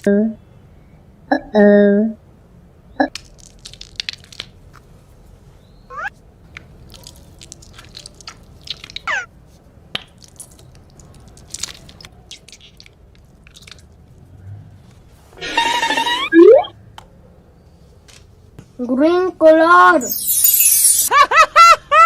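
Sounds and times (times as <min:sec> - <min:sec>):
small objects clicking and crunching: 0:03.1 - 0:04.9, 0:06.5 - 0:09.1, 0:09.9 - 0:14.1
falling squeaky tones: 0:15.4 - 0:16.7, 0:20.0 - 0:21.1.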